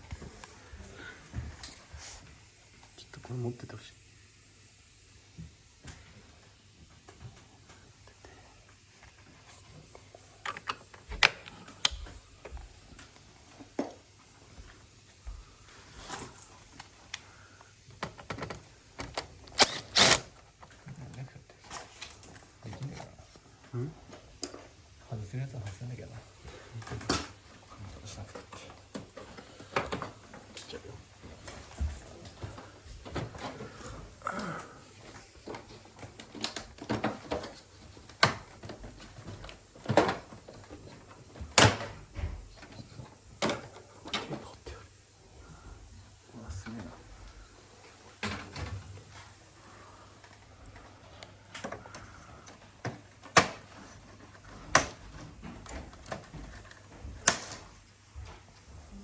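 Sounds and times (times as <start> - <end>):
air conditioner parts clicking: 8.7 - 14.2, 16.1 - 44.7, 46.4 - 58.7.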